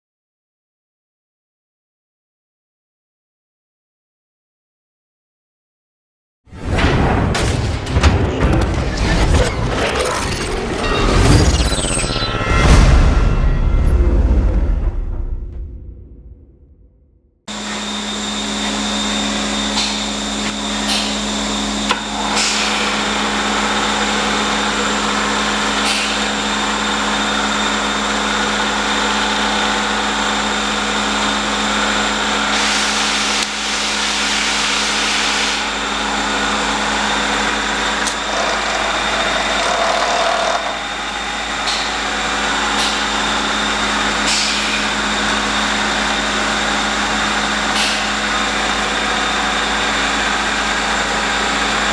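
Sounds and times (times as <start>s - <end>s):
milling machine humming: 17.5s - 51.9s.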